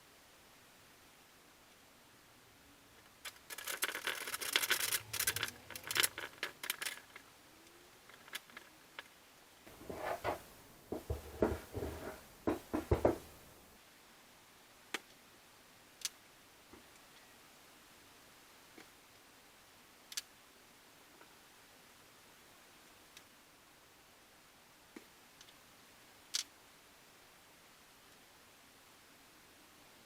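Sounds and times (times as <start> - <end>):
dull knocks: 9.7 - 13.5
light clattering and clicking: 9.7 - 13.5
rustling: 9.7 - 13.6.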